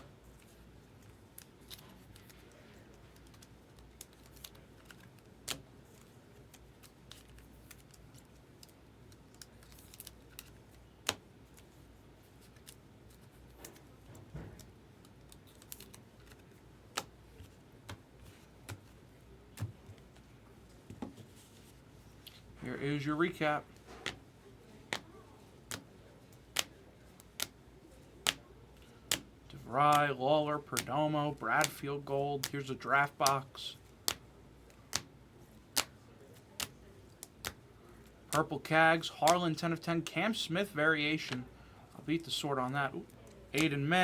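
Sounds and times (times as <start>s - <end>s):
cards clicking on a table: 34.9s - 35.1s, 43.6s - 43.8s.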